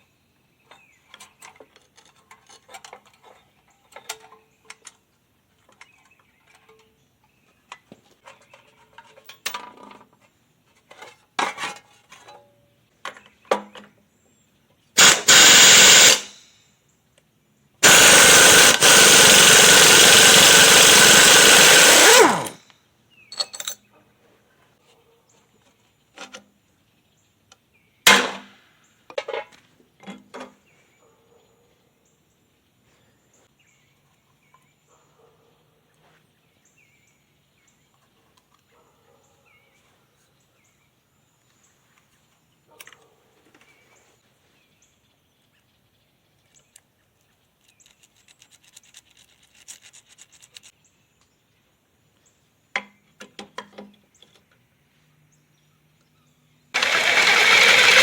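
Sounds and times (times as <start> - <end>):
mower engine running: 15.0 - 16.4, 17.8 - 22.6, 56.8 - 58.0
pull-start burst: 15.0 - 16.4, 17.8 - 22.6, 56.8 - 58.0.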